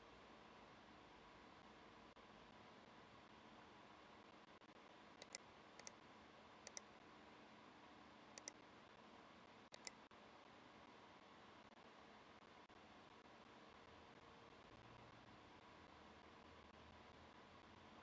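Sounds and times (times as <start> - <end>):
faint steady hum: 0.0 - 18.0
faint sharp clicks in pairs: 5.2 - 6.0, 6.7 - 6.9, 9.7 - 10.0.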